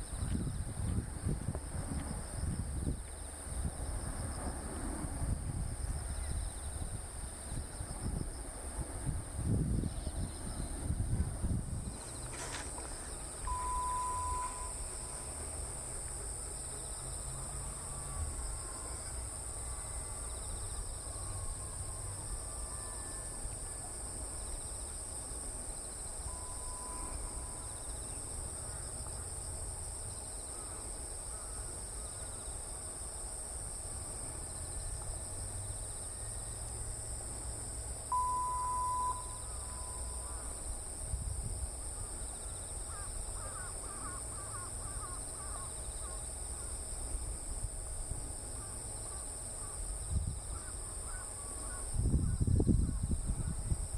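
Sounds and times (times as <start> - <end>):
insects chirping chorus: 0.0 - 53.9
short pure tone: 13.4 - 15.6, 38.1 - 40.6.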